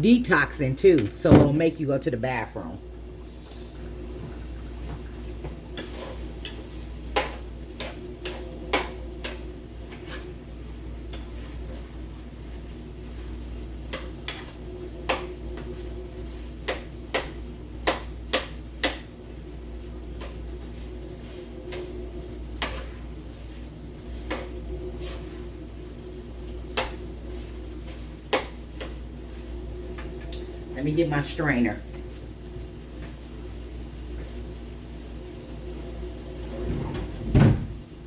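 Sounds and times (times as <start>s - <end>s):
steady low hum: 0.0s - 38.0s
utensil scraping a cooking pan: 5.7s - 10.5s, 20.1s - 25.6s.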